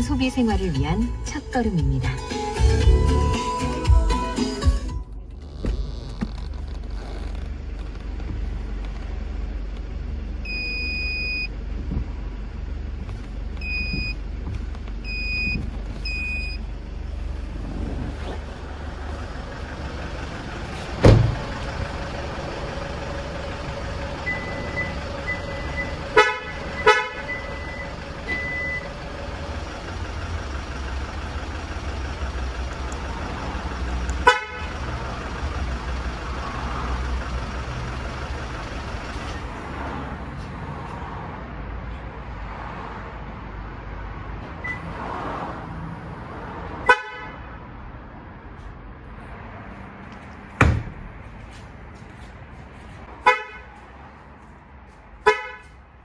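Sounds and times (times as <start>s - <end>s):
car alarm beeps: 10.4s - 11.6s, 13.6s - 14.2s, 15.1s - 16.6s, 24.2s - 29.0s
thump: 21.0s - 21.5s, 50.6s - 51.1s
car horn toots: 24.2s - 29.0s, 34.1s - 34.9s, 46.9s - 47.4s, 53.2s - 53.8s, 55.2s - 55.8s.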